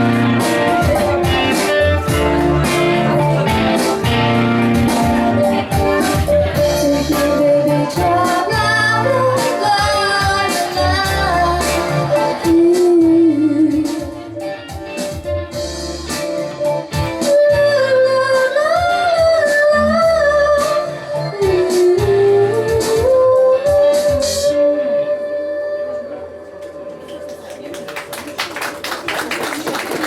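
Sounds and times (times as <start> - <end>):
repeating bass line: 0.0 - 7.1
electronic lead melody: 0.0 - 17.8.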